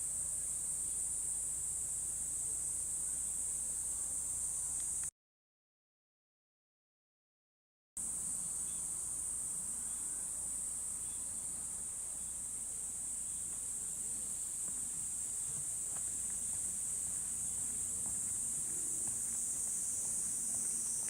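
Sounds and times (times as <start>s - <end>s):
insects buzzing: 0.0s - 5.1s, 8.0s - 21.0s.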